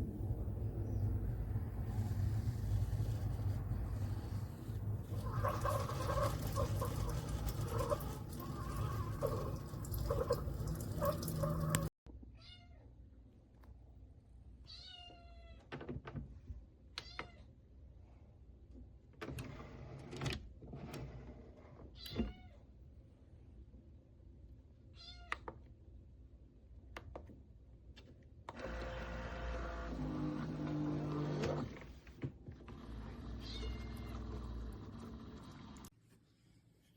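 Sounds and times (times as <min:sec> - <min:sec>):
pitched animal calls: 0:05.1 - 0:11.9.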